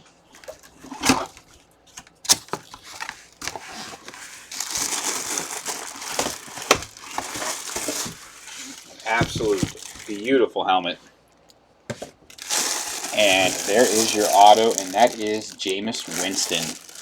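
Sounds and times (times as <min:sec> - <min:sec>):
packaging crinkling and rustling: 0:00.4 - 0:10.4, 0:12.0 - 0:17.0
sharp handling knocks: 0:09.1 - 0:10.1.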